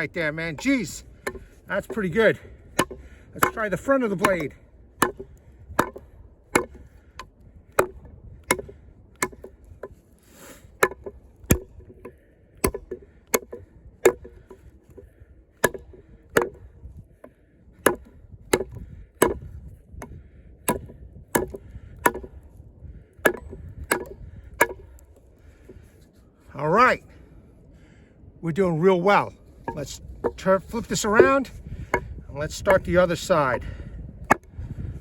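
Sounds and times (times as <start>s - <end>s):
knife chopping into log: 2.7s - 6.9s, 7.7s - 10.0s, 10.8s - 16.7s, 17.8s - 19.5s, 20.6s - 22.4s, 23.2s - 25.0s.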